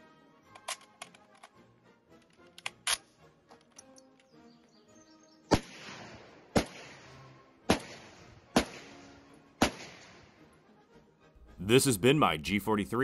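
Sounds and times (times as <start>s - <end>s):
rifle shots with echo: 5.5s - 10.4s
march music: 6.6s - 13.0s.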